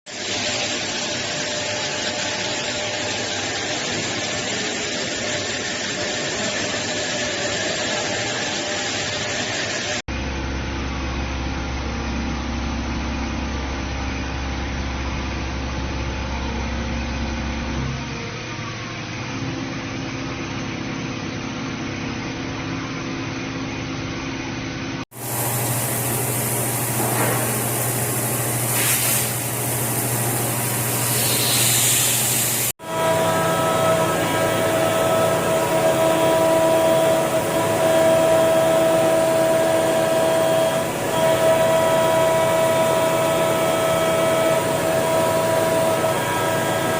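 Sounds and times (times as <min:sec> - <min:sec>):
machine hum: 0:00.3 - 0:46.9
hiss of cutting: 0:25.2 - 0:32.7.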